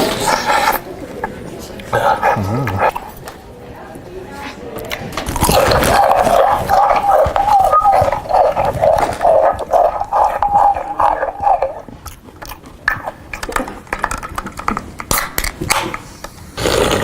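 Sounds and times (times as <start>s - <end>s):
chewing through a megaphone: 0.0s - 17.0s
crunching and clicking: 4.8s - 16.0s.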